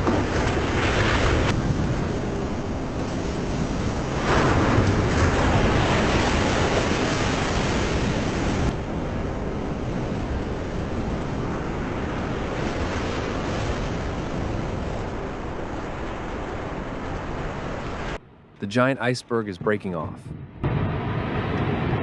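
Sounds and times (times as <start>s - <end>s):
floodwater rushing: 0.0s - 18.2s.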